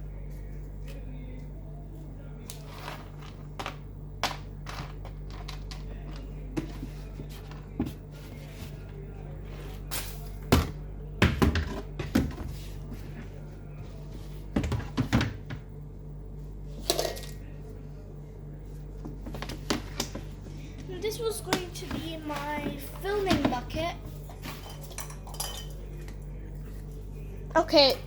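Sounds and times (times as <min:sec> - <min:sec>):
steady low hum: 0:00.0 - 0:28.0
household items knocking and clattering: 0:10.4 - 0:12.7, 0:14.5 - 0:15.7, 0:21.5 - 0:24.9.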